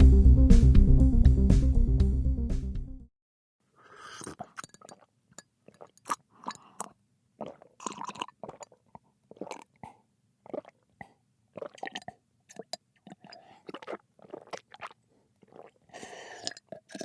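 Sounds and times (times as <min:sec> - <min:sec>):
person slurping liquid: 0:03.8 - 0:17.0
gulping and swallowing: 0:04.0 - 0:17.0.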